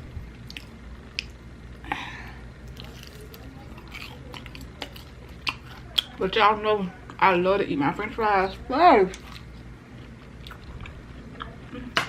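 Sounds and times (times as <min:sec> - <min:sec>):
steady low hum: 0:00.0 - 0:12.0
chewing with smacking mouth clicks: 0:00.4 - 0:01.4, 0:02.7 - 0:06.2, 0:09.1 - 0:11.9.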